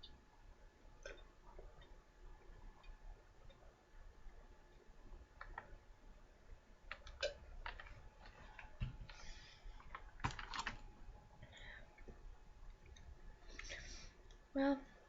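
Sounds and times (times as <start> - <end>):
faint clicks and taps: 4.3 - 5.8, 6.8 - 14.4.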